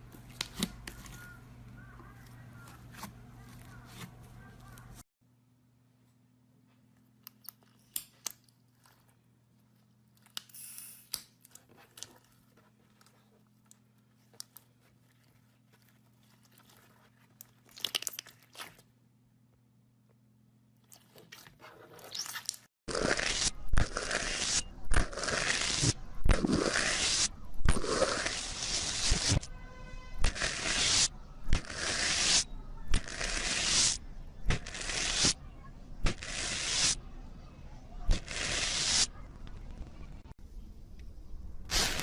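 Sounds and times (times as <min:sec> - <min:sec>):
slime crackling and squishing: 0:14.4 - 0:18.9.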